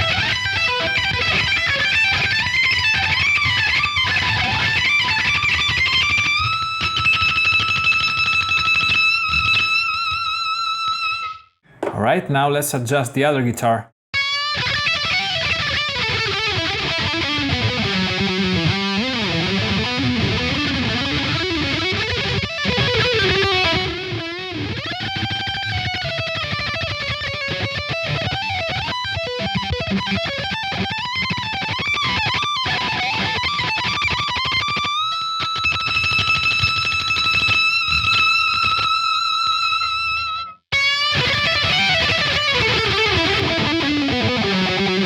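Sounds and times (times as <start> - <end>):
high-gain electric guitar lead: 40.8 - 45.0.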